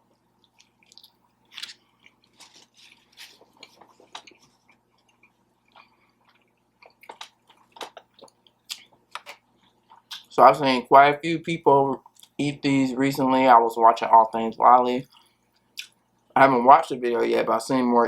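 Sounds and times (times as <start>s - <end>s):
person chewing with wet smacking: 0.0s - 10.3s, 15.1s - 16.0s.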